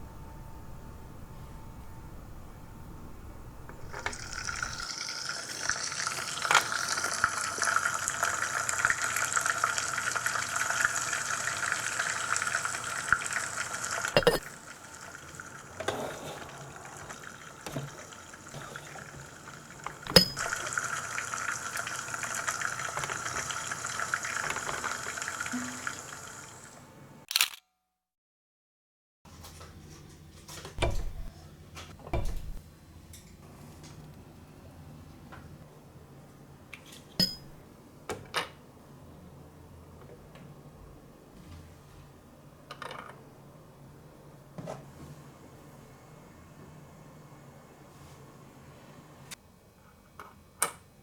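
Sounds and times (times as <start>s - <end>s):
steady sizzling hiss: 0.0s - 27.2s.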